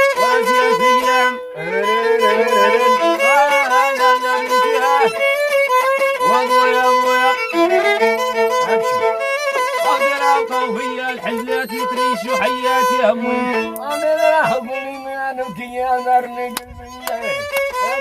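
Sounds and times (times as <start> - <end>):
violin melody: 0.0 - 18.0
steady held note: 0.4 - 16.3.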